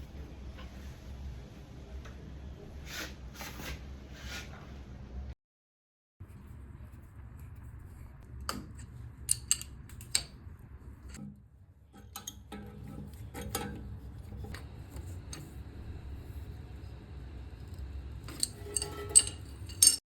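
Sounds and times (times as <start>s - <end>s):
low steady hum: 6.2s - 20.0s.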